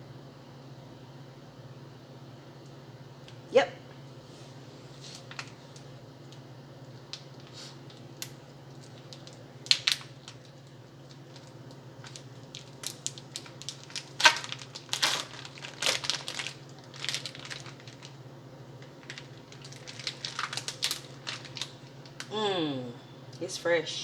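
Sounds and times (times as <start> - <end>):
low steady hum: 0.0 - 24.0
plastic packaging crinkling: 5.0 - 5.9, 7.1 - 22.3.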